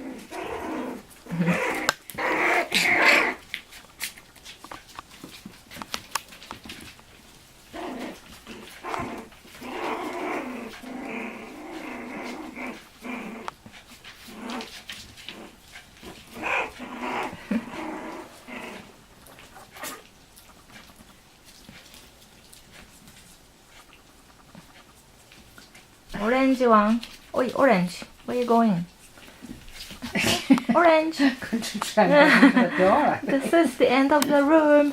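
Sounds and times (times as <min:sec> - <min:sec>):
puppies growling and whining: 0:00.0 - 0:26.2.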